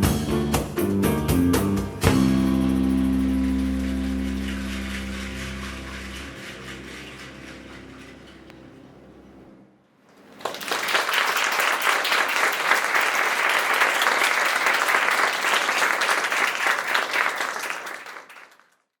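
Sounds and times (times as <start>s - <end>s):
audience applauding: 3.8s - 8.5s, 10.1s - 19.0s.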